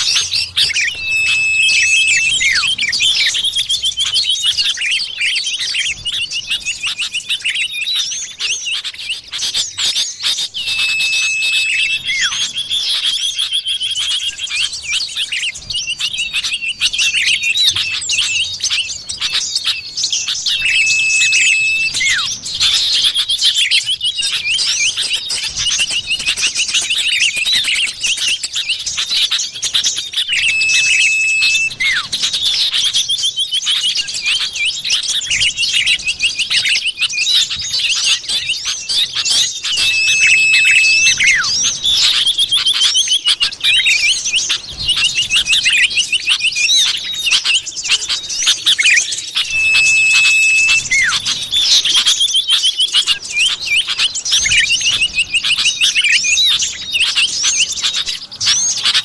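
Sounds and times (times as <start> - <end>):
long level whistle: 0.0 - 4.9, 10.2 - 13.5, 16.0 - 18.8, 20.3 - 23.2, 30.1 - 32.8, 39.2 - 42.9, 48.7 - 53.6
bird chirps and trills: 0.0 - 59.0.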